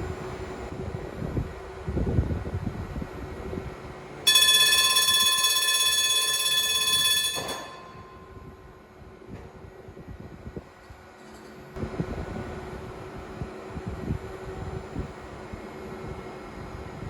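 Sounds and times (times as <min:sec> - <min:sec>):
tram warning bell ringing: 0:04.3 - 0:09.0.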